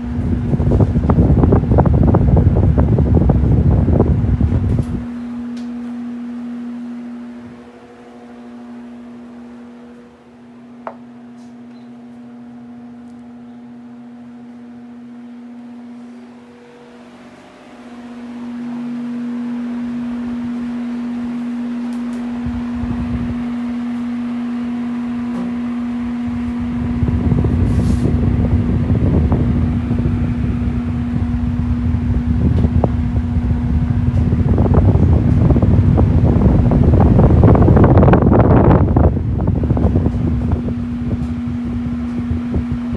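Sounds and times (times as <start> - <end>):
wind buffeting microphone: 0.0 - 7.8, 22.3 - 24.4, 25.0 - 42.9
electric fan motor hum: 0.0 - 42.9
fan switch click: 4.4 - 6.0, 21.8 - 24.1.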